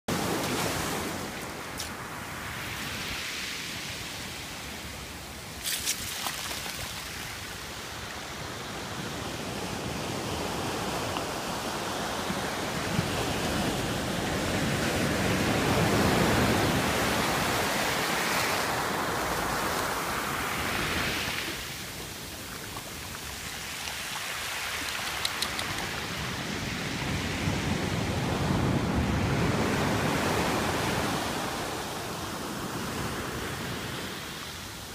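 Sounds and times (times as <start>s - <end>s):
faint short clicks: 24.8s - 26.0s.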